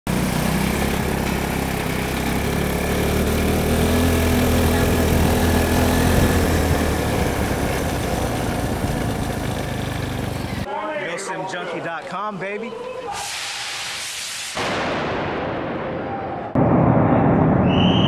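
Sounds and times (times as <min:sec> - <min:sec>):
small engine idling: 0:00.1 - 0:10.7.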